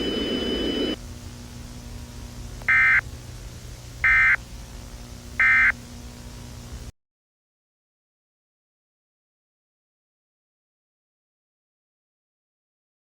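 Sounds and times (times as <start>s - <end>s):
faint low hum: 0.0s - 6.9s
buzzy digital data bursts: 2.7s - 3.0s, 4.0s - 6.8s.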